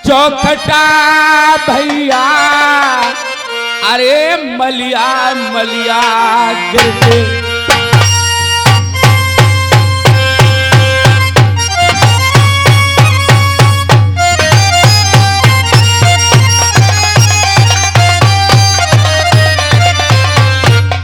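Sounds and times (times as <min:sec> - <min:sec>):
reed instrument melody: 0:00.8 - 0:21.0
deep drum beat: 0:06.8 - 0:21.0.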